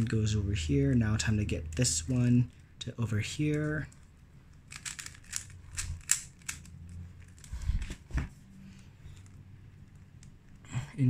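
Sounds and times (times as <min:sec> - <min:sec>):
plastic puzzle cube clicking: 0:04.5 - 0:07.6.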